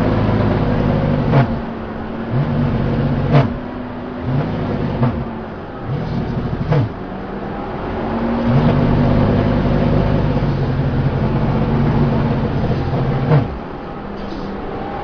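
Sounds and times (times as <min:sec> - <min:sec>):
vehicle engine running: 0:00.0 - 0:15.0.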